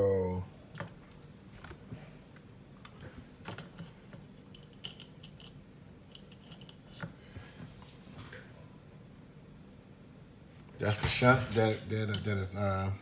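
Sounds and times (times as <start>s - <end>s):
faint low hum: 0.0s - 13.0s
small metal clicks and clinks: 4.5s - 6.8s.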